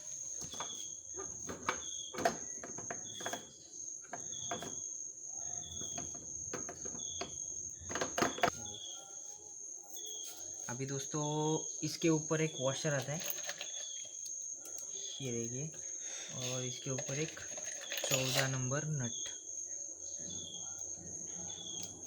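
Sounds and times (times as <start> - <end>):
cricket chirping: 0.0 - 22.0
metal engine parts clicking: 12.9 - 15.5, 16.3 - 18.7.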